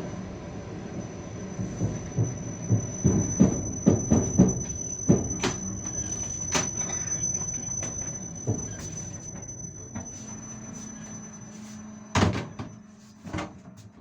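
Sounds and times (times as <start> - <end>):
train rolling rumble: 0.0 - 14.0
thin high whine: 1.0 - 13.2
train wheels clickety-clack: 1.6 - 10.1.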